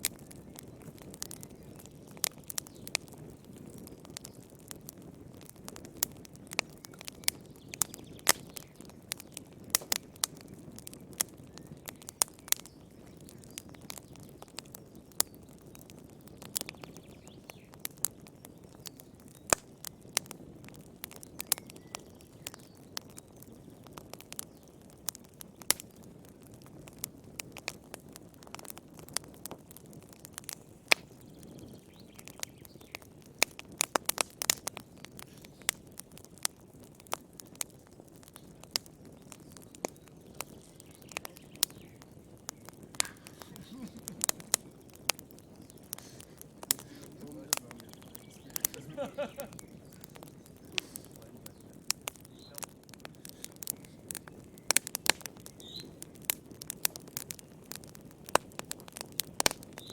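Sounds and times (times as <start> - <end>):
wood fire crackling and popping: 0.0 - 59.9
hiss of flames: 25.0 - 59.9.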